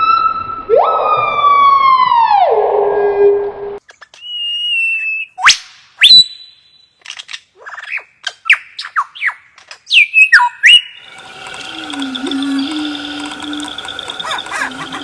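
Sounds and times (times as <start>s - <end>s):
bird whistling calls: 7.9s - 11.0s, 11.8s - 15.0s.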